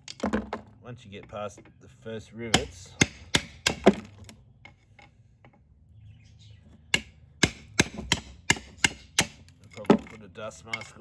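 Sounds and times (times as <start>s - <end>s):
hammer striking chisel on metal: 2.5s - 4.0s, 6.9s - 9.5s.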